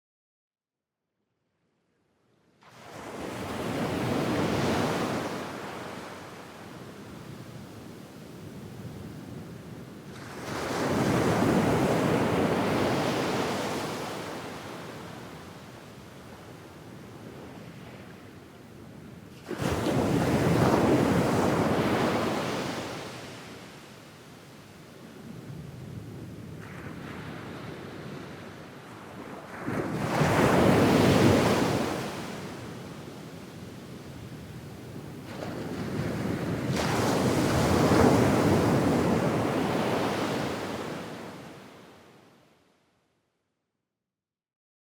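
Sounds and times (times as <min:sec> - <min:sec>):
ocean waves on sandy beach: 0:02.6 - 0:24.1, 0:25.1 - 0:42.2.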